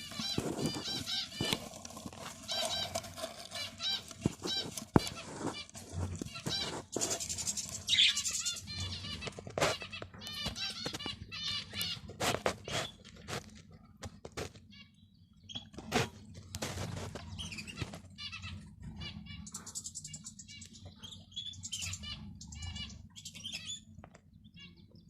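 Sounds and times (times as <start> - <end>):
finches chirping: 0.0 - 12.0, 17.2 - 25.0.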